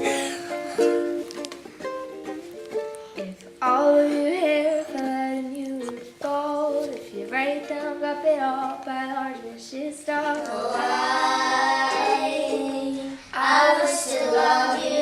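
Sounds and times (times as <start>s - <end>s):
girl singing held notes: 3.0s - 15.0s.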